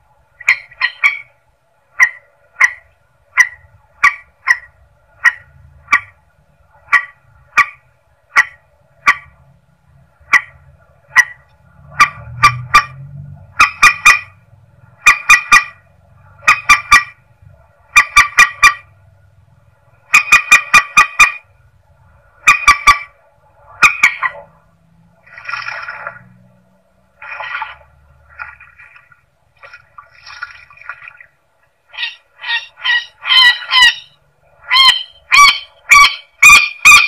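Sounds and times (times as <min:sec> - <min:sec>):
rail bird sharp clipped calls: 0:31.9 - 0:37.0.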